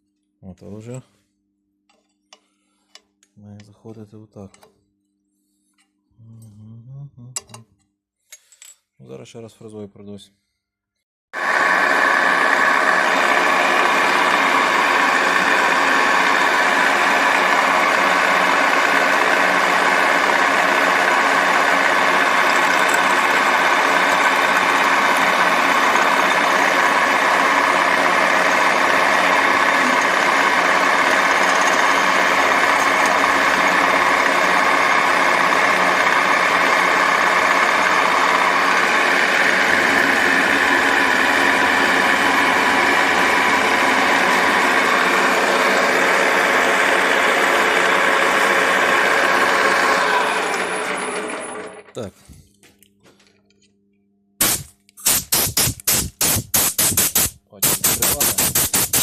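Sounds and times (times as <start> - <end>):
milling machine cutting metal: 11.4 - 52.0, 54.4 - 59.0.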